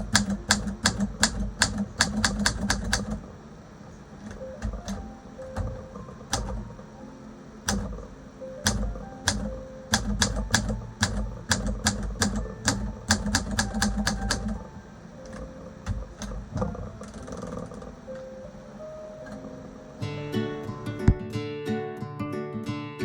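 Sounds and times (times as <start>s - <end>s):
typewriter keystrokes: 0.0s - 3.3s, 4.2s - 6.8s, 7.6s - 18.4s.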